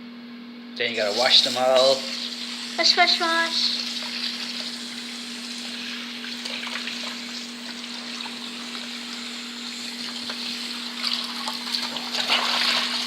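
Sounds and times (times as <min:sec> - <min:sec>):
small splashes: 0:11.0 - 0:13.0.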